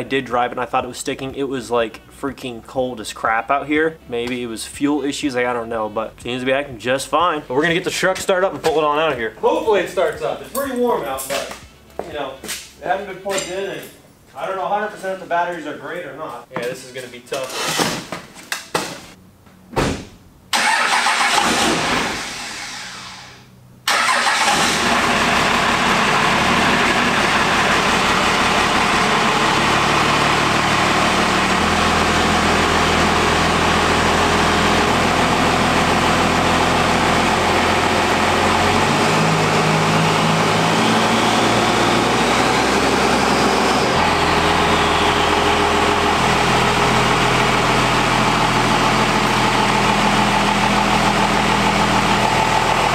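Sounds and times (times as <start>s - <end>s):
diesel engine starting and idling: 20.5s - 52.9s
faint turbo whistle: 44.1s - 45.9s.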